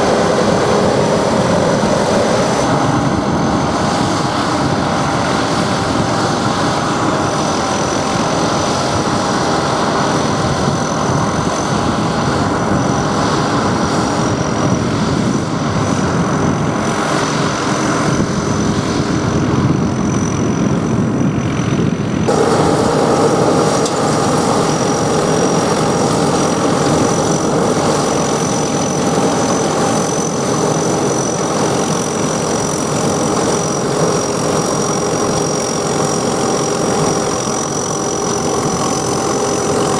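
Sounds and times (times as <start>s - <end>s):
high whine: 0.0s - 4.8s, 22.3s - 39.9s
combine harvester running: 0.0s - 18.1s, 22.2s - 39.9s.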